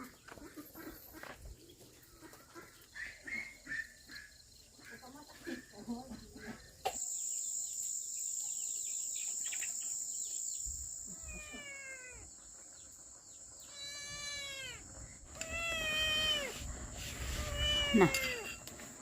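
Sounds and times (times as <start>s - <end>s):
cat meowing: 11.1s - 12.3s, 13.7s - 14.8s, 15.4s - 16.6s, 17.4s - 18.5s.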